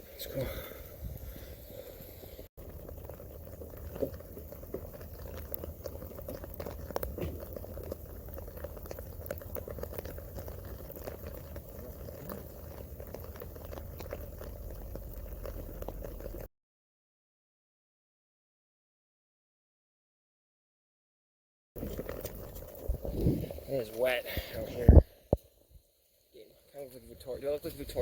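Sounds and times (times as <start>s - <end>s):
low steady rumble: 0.2s - 16.5s
rain pattering: 2.6s - 16.5s, 21.8s - 25.4s, 26.7s - 28.0s.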